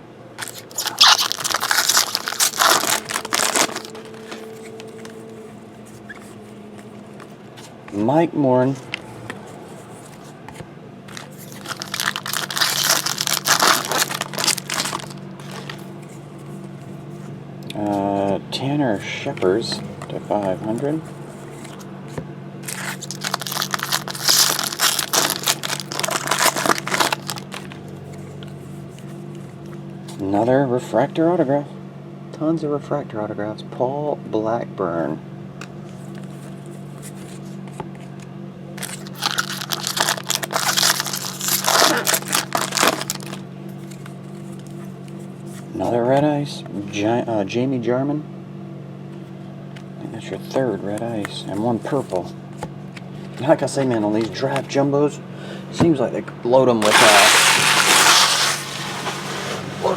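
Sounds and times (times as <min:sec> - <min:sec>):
faint steady hum: 0:00.0 - 0:59.9
foil wrapper tearing and crinkling: 0:00.4 - 0:05.2, 0:11.1 - 0:16.0, 0:22.6 - 0:27.8, 0:38.8 - 0:44.7, 0:56.8 - 0:59.9.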